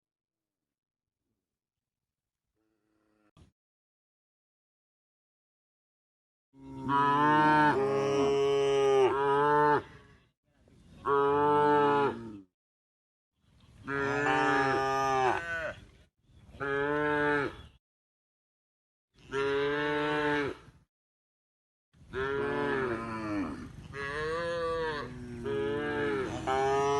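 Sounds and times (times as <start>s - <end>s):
cows mooing: 6.6s - 9.9s, 13.9s - 15.8s, 22.2s - 26.9s.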